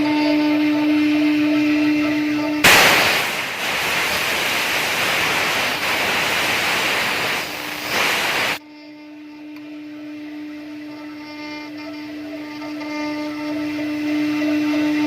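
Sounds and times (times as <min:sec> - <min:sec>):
spindle whine: 0:02.6 - 0:08.6
wood router rushing hiss: 0:02.6 - 0:08.6.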